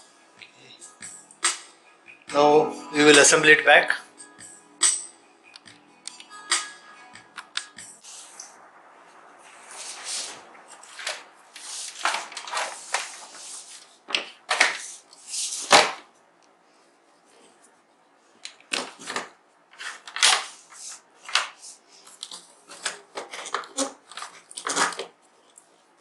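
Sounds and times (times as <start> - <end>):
clicks clatter and scraping of parts: 21.2 - 25.7.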